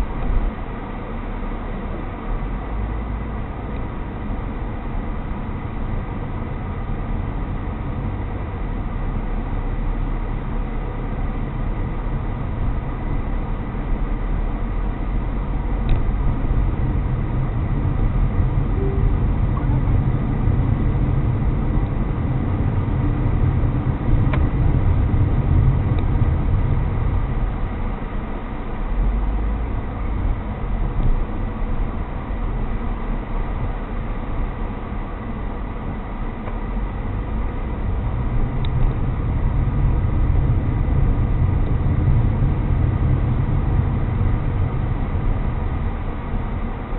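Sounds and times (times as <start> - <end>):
car engine and road rumble: 0.0 - 46.9
faint high hum: 18.5 - 21.6.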